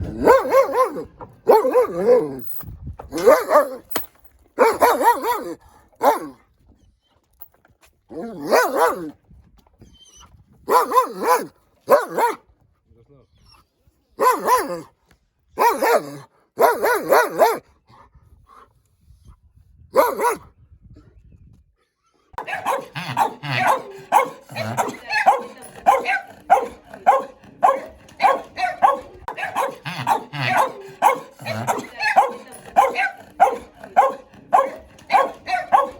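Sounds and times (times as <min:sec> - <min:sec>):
dog barking angrily: 0:00.0 - 0:02.4, 0:03.1 - 0:03.9, 0:04.6 - 0:06.4, 0:08.2 - 0:09.1, 0:10.7 - 0:12.4, 0:14.2 - 0:14.9, 0:15.6 - 0:17.6, 0:20.0 - 0:20.4, 0:22.4 - 0:35.9.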